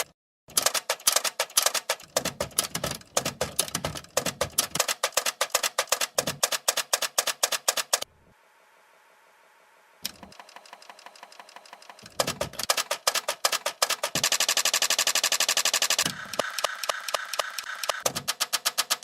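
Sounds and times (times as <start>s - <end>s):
typewriter keys clattering: 0.5s - 8.0s, 11.9s - 15.2s, 18.0s - 19.0s.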